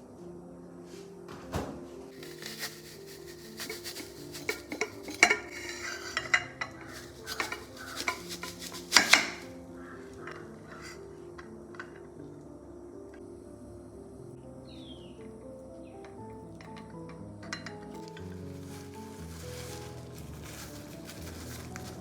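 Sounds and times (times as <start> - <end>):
soft background music: 0.0 - 22.0
kitchen utensils clinking on dishes: 2.2 - 9.6.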